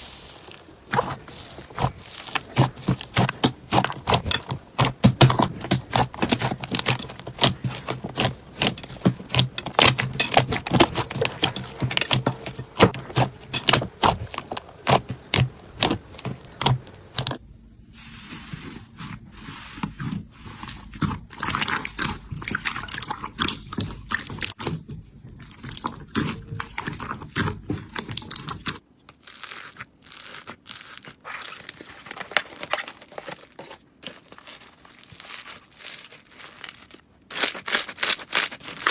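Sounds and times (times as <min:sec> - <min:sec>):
slime crackling and popping: 0:00.1 - 0:17.4.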